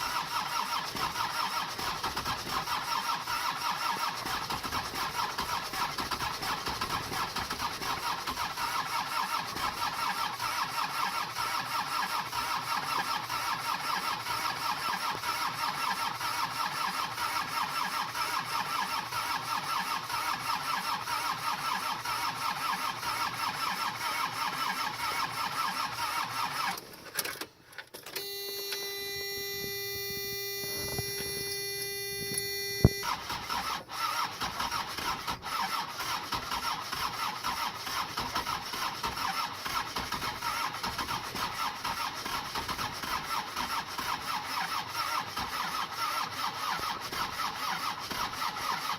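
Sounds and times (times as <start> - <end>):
starter motor cranking engine: 0.0 - 28.9, 29.6 - 48.9.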